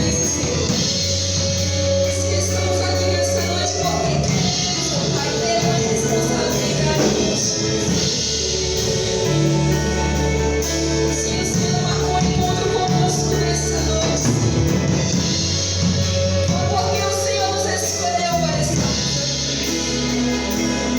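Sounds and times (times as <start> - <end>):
held bass line: 0.0 - 20.9
worship band playing gospel song: 0.0 - 20.9
people singing: 2.0 - 15.3.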